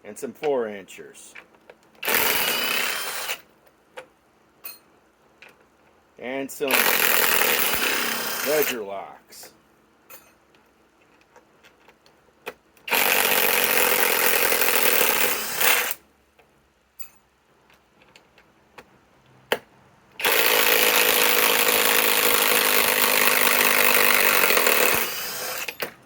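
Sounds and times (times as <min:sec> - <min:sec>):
impact wrench hammering: 0:06.7 - 0:08.8, 0:19.5 - 0:26.0.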